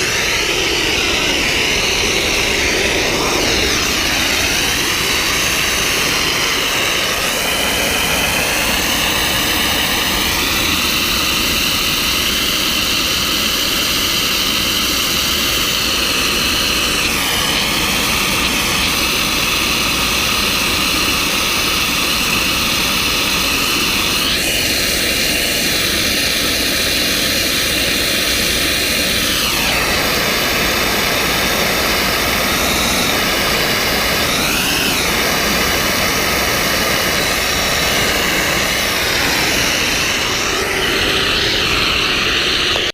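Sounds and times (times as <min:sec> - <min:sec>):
pressure washer engine and pump: 0:00.0 - 0:42.9
spray hissing: 0:00.0 - 0:42.9.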